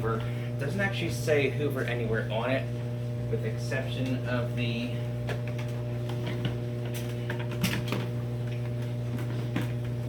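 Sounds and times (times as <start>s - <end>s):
low electrical hum: 0.0s - 10.0s.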